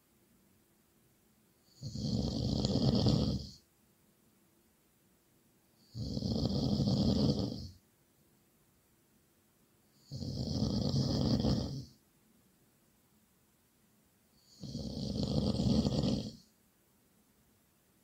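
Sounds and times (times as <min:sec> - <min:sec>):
loud snoring: 0:01.7 - 0:03.6, 0:05.8 - 0:07.8, 0:10.0 - 0:12.0, 0:14.4 - 0:16.5.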